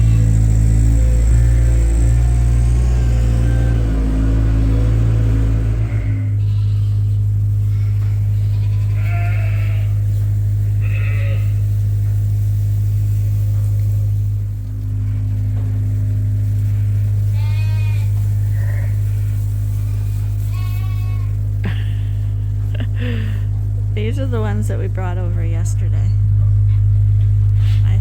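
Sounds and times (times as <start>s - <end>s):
loud steady low hum: 0.0s - 28.0s
sheep bleating: 3.2s - 10.1s, 10.7s - 11.7s, 17.2s - 19.1s, 19.8s - 21.4s.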